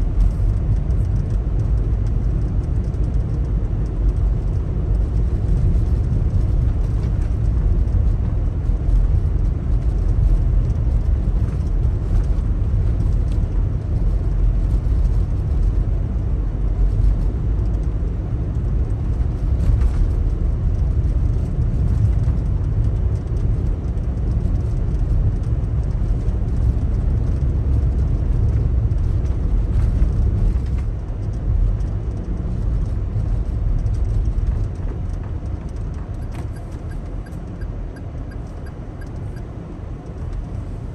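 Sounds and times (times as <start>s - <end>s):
car engine and tyre rumble: 0.0s - 40.9s.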